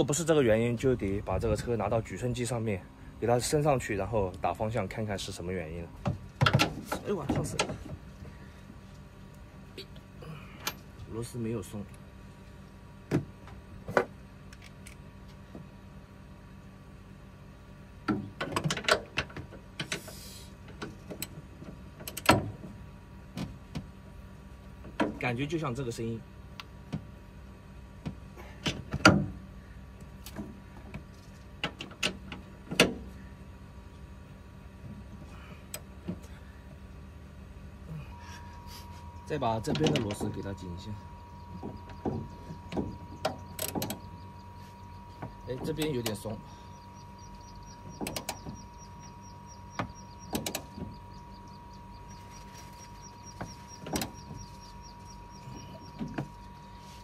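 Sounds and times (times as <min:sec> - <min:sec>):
low steady hum: 0:00.0 - 0:57.0
light even ticking: 0:39.2 - 0:56.7
car front end creaking and knocking: 0:41.3 - 0:44.5, 0:47.2 - 0:51.5.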